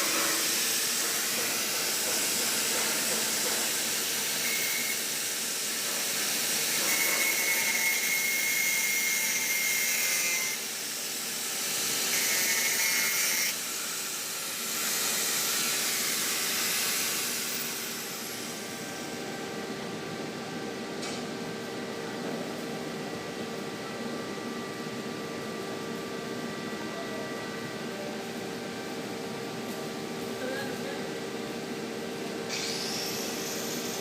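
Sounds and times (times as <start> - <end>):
arc welding hiss: 32.5 - 34.0.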